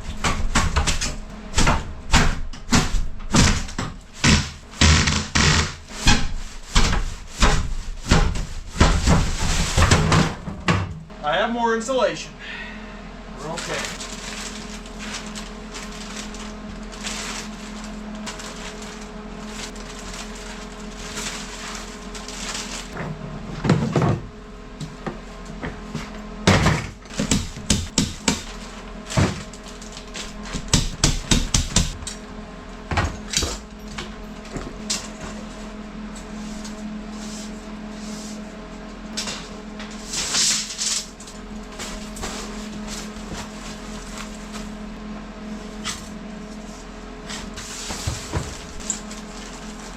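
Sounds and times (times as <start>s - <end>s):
steady low hum: 0.0s - 49.9s
hammer striking wood: 27.2s - 28.5s, 30.7s - 32.0s.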